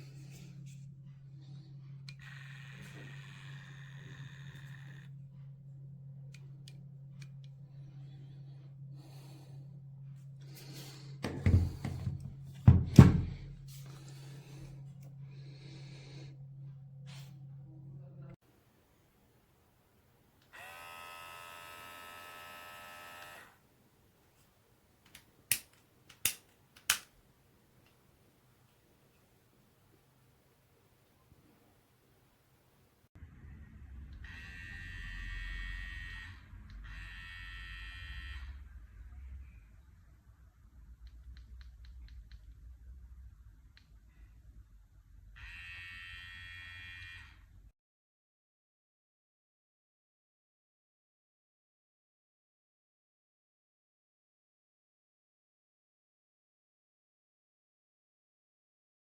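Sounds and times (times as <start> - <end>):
electric hair clipper humming: 2.1 - 5.1, 20.4 - 23.6, 34.2 - 38.6, 45.4 - 47.4
handling clunks and knocks: 11.2 - 13.6.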